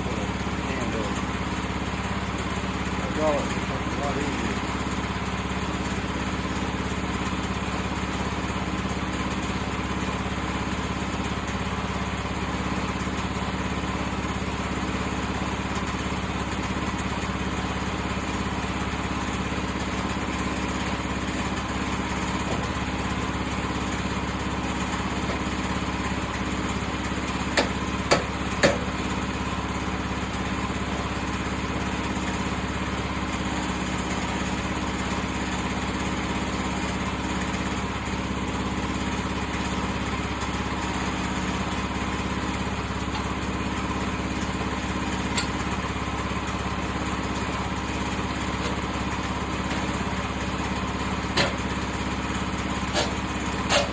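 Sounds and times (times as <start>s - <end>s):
small engine running: 0.0s - 53.9s
sharp knocks: 27.6s - 28.9s.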